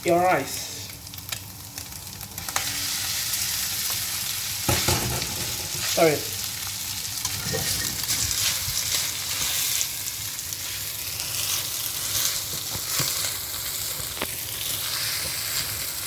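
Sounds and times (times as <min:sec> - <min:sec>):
fried rice sizzling in a pan: 0:00.0 - 0:16.0
utensil scraping a pan: 0:07.2 - 0:09.4.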